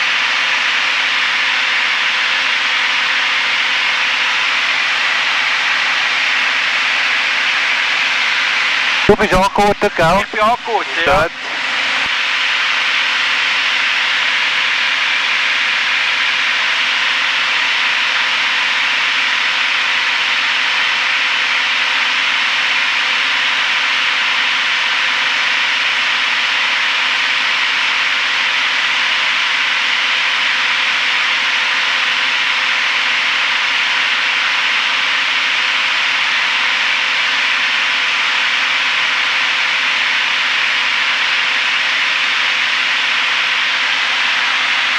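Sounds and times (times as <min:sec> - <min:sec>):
aircraft cabin engine hiss: 0:00.0 - 0:44.9
faint steady hum: 0:03.2 - 0:22.6.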